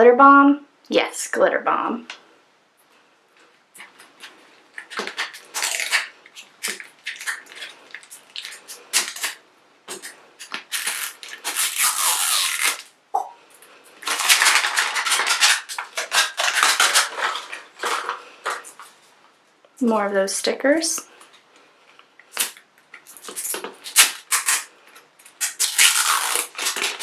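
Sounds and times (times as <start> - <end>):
plastic wrapping crinkling: 3.4 - 13.0, 13.6 - 19.3, 21.2 - 27.0.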